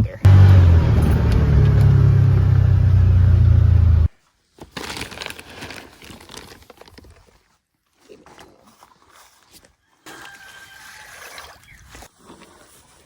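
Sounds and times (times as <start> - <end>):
vehicle engine running: 0.2 - 4.1.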